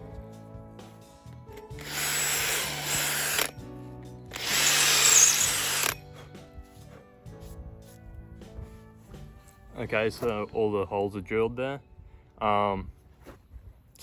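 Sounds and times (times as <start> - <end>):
background music: 0.0 - 14.0
electric drill boring into wood: 1.7 - 3.6, 4.3 - 6.0.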